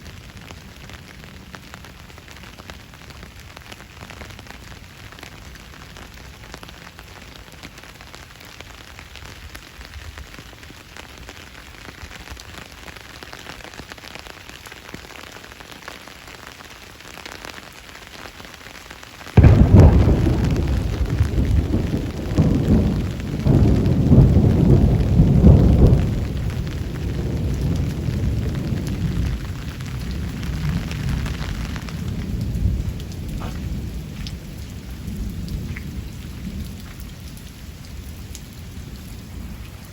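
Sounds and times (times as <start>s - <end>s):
heavy rain: 0.0s - 39.9s
thunder rumbling: 19.4s - 39.9s.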